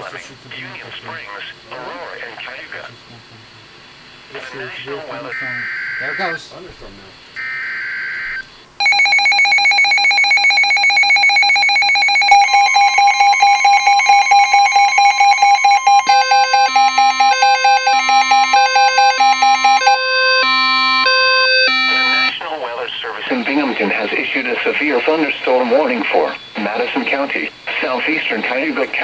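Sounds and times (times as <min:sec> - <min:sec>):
steady warning alarm tone: 0:04.6 - 0:06.6, 0:07.4 - 0:22.4
fast-pulsing electronic alarm beeps: 0:05.2 - 0:06.4, 0:07.4 - 0:22.4.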